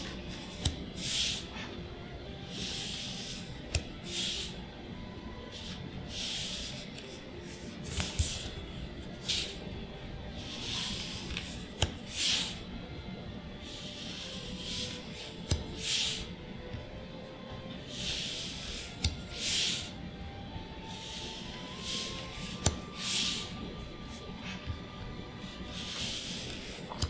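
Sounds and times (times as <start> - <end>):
card edges clicking: 0.0 - 1.7, 2.5 - 4.6, 5.2 - 9.7, 10.3 - 12.7, 13.8 - 16.8, 17.7 - 20.0, 20.8 - 27.0
cards sliding with soft swish: 0.0 - 12.8, 13.4 - 27.0.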